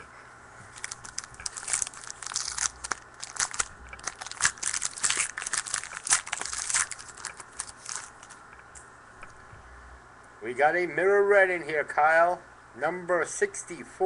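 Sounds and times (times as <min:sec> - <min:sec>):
cards being handled: 0:00.7 - 0:08.4
foil wrapper crinkling and tearing: 0:00.7 - 0:08.4.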